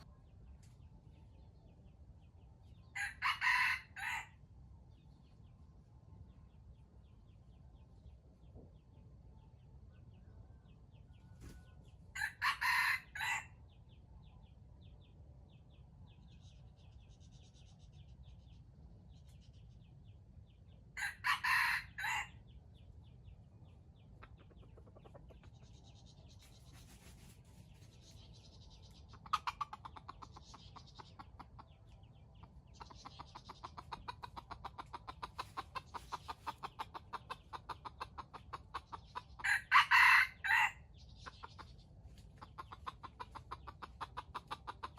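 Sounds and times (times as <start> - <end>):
rooster crowing: 3.0 - 4.3, 12.2 - 13.5, 21.0 - 22.3, 39.4 - 40.8.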